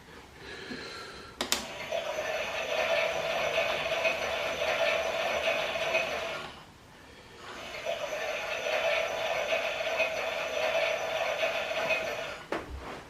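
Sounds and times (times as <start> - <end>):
toy washing machine running: 1.6 - 6.7, 7.4 - 12.5.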